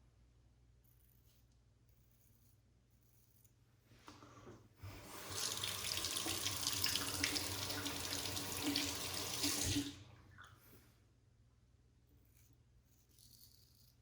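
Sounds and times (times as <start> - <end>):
tap water running into sink: 4.9 - 10.0.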